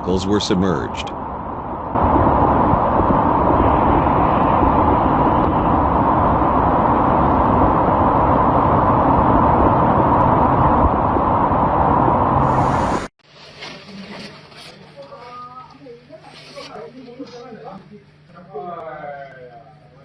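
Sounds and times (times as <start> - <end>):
torrential rain: 1.8 - 13.1.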